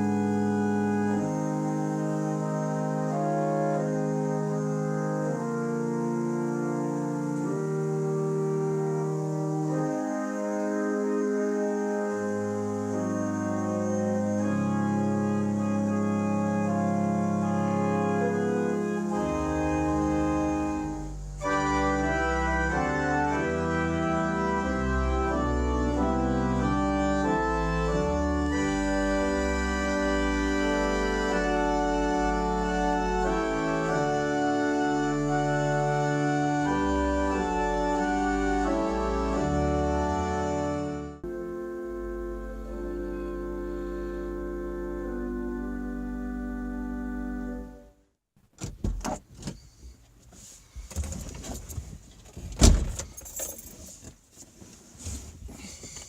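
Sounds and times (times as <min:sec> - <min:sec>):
deep organ bass pedal notes: 0:00.0 - 0:48.1
pipe organ chords: 0:00.0 - 0:48.2.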